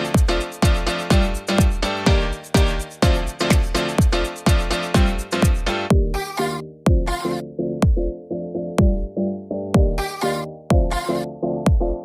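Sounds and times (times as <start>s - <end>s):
kick drum beat: 0.0s - 6.2s, 6.9s - 7.2s, 7.8s - 8.1s, 8.8s - 9.2s, 9.8s - 10.1s, 10.7s - 11.1s, 11.7s - 12.0s.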